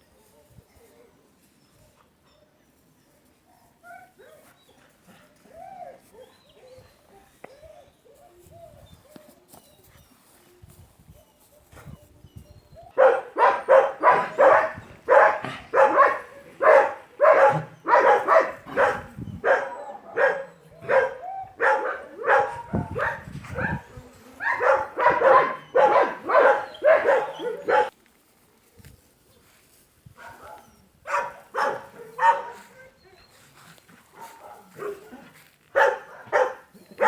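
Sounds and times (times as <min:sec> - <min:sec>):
dog barking: 0:13.0 - 0:23.8, 0:24.4 - 0:27.9, 0:30.2 - 0:32.8, 0:34.1 - 0:36.7.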